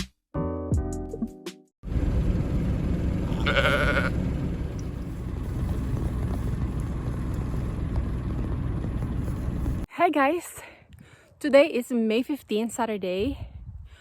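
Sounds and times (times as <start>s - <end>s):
sheep bleating: 3.2s - 4.2s
wind rumbling on microphone: 13.1s - 14.0s.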